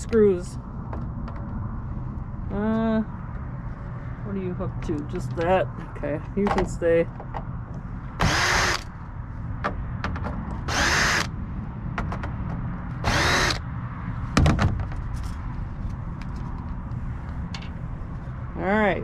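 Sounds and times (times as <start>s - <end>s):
power screwdriver whirring: 8.2s - 8.9s, 10.6s - 11.3s, 13.0s - 13.6s.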